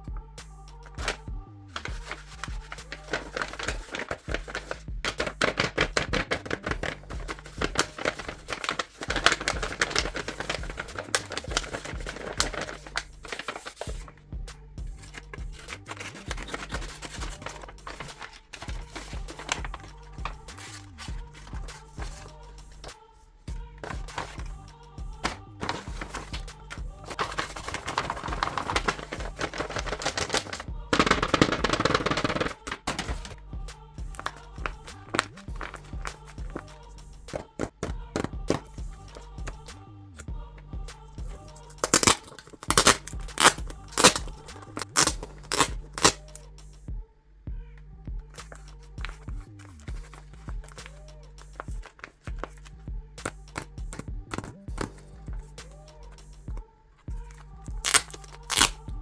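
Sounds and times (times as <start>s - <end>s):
soft background music: 0.0s - 59.0s
paper pieces clicking and tapping: 1.8s - 14.1s, 15.1s - 22.3s, 23.8s - 24.5s, 25.2s - 26.5s, 27.1s - 33.4s, 34.2s - 36.7s, 37.3s - 39.6s, 41.8s - 46.4s, 48.3s - 55.5s, 57.3s - 58.8s.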